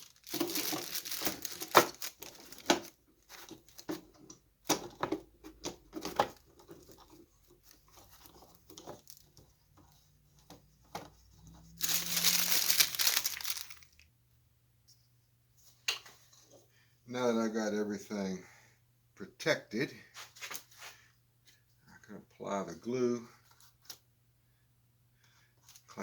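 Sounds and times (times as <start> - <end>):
wax paper crinkling: 0.0 - 3.9, 7.6 - 9.4, 11.8 - 14.0
paper tearing: 11.8 - 13.8.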